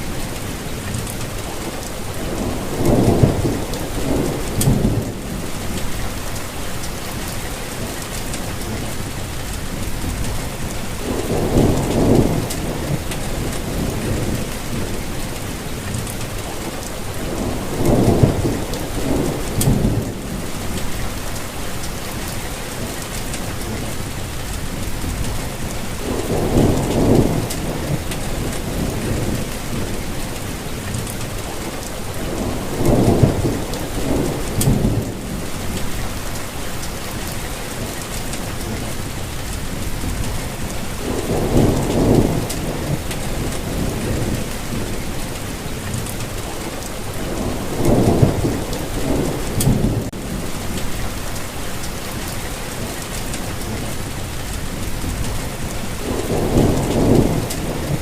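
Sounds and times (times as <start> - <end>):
steady rainfall: 0.0 - 58.0.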